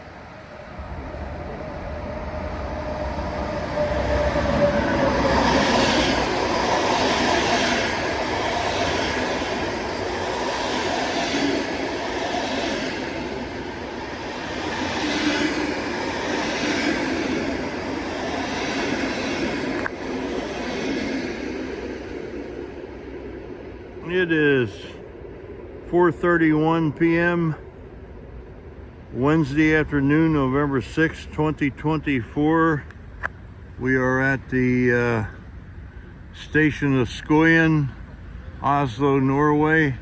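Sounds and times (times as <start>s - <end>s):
train wheels rumbling on rails: 0.0s - 25.8s.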